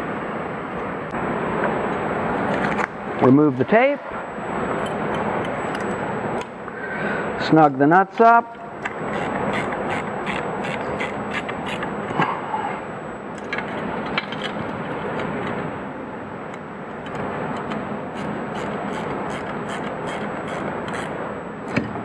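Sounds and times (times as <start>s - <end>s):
wrench clicking: 8.8s - 11.9s, 17.1s - 21.8s
metal rubbing: 9.0s - 12.0s.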